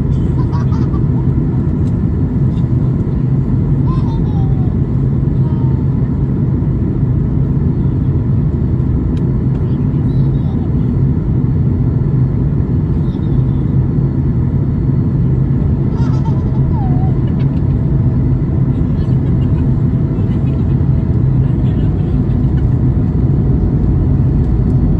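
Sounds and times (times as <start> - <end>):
airplane cabin roar: 0.0 - 24.9
faint voices: 9.5 - 11.0, 18.6 - 22.8.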